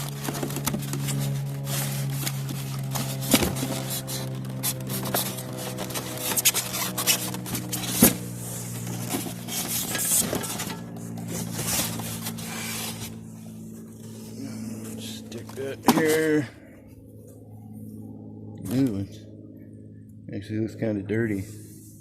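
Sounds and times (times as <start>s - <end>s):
cardboard box scraping and rubbing: 0.0s - 13.4s
steady low hum: 0.0s - 22.0s.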